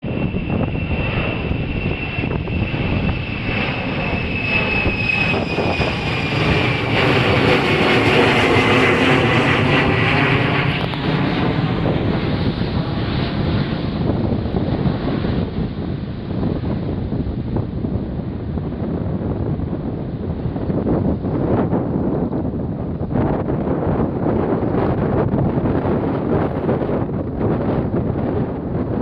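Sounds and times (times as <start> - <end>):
high engine whine: 0.0 - 19.9
airplane engines roaring: 0.0 - 29.0.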